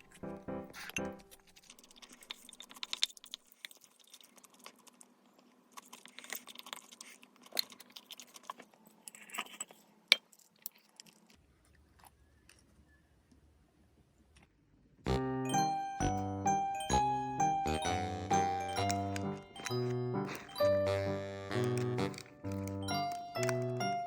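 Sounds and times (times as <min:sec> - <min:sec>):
person chewing: 0:00.0 - 0:12.2, 0:17.6 - 0:24.0.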